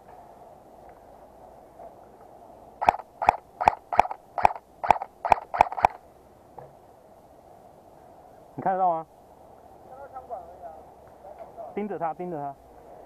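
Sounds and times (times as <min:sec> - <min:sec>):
airsoft gun shots: 0:02.8 - 0:06.0.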